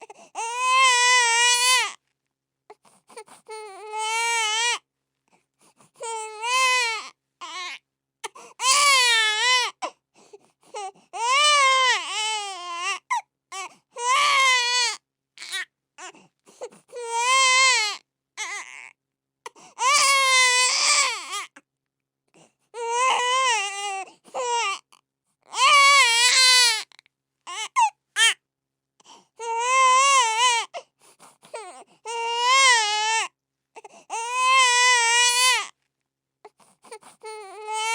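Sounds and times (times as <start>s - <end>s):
baby crying: 0.4s - 2.0s, 3.5s - 4.8s, 6.0s - 9.9s, 10.8s - 16.2s, 16.9s - 18.9s, 19.8s - 21.6s, 22.8s - 28.4s, 29.4s - 30.8s, 31.5s - 35.7s, 36.9s - 37.9s.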